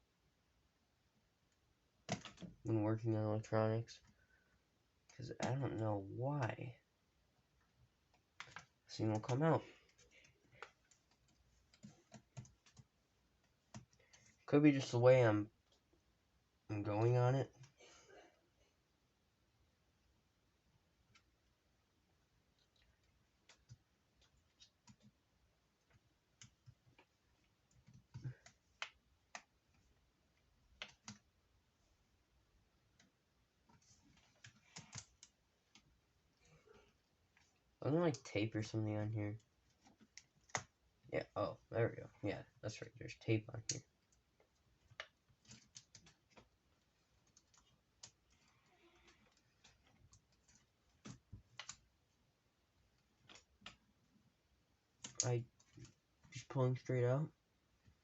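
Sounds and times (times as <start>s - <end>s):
fingers clicking and tapping on plastic: 2.0s - 2.7s, 8.1s - 14.4s, 25.8s - 31.3s, 39.4s - 41.1s, 43.6s - 51.9s.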